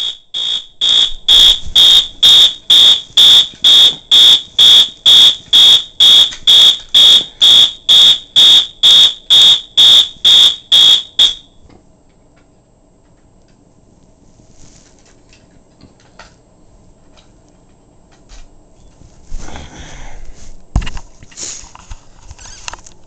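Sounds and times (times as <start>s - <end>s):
fire alarm horn blasts: 0.0s - 11.6s.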